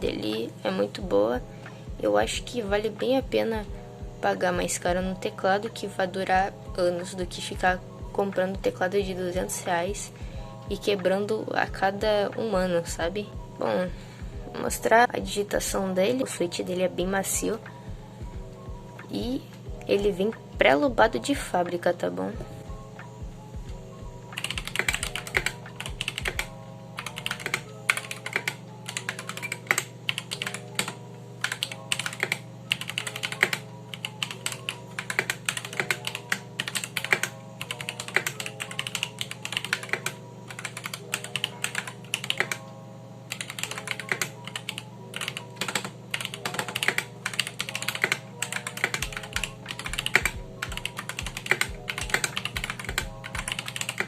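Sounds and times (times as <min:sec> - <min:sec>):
mechanical keyboard typing: 0:24.4 - 0:42.6, 0:43.3 - 0:54.0.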